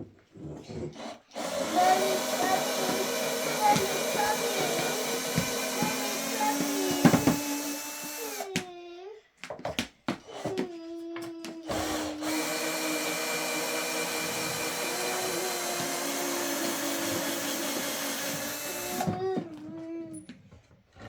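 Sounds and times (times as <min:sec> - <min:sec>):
whirring motor: 0:01.0 - 0:08.5, 0:11.7 - 0:19.2.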